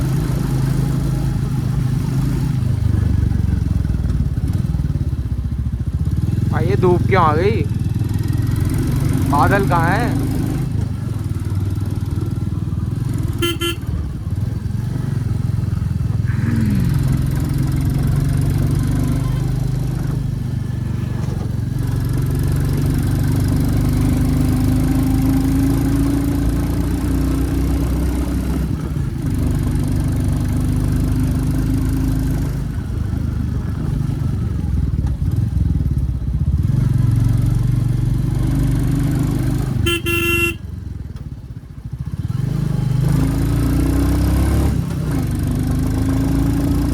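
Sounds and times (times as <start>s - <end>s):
motorcycle engine running: 0.0s - 46.9s
vehicle horn: 13.4s - 14.0s, 39.8s - 40.6s.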